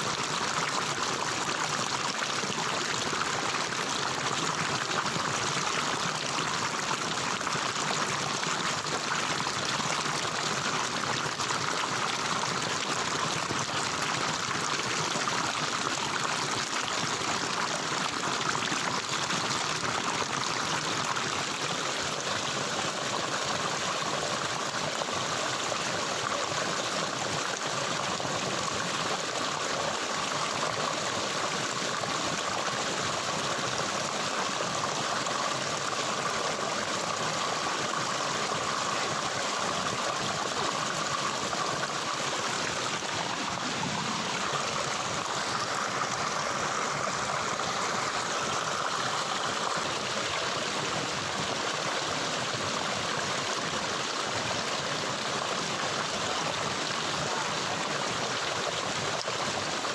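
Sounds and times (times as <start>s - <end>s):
stream water flowing: 0.0s - 59.9s.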